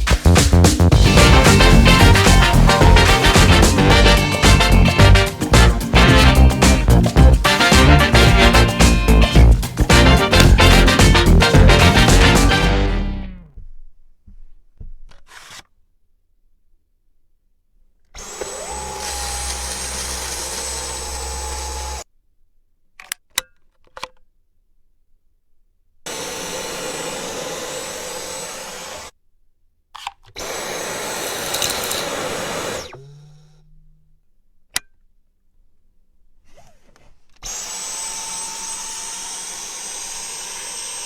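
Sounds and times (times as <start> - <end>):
stick vacuum motor whine: 1.0 - 13.3, 18.2 - 22.0, 26.1 - 29.1, 30.4 - 34.0, 36.5 - 41.0.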